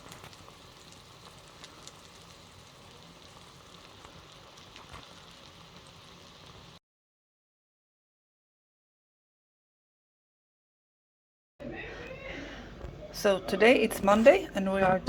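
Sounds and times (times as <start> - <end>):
patties sizzling in a pan: 0.0 - 6.8.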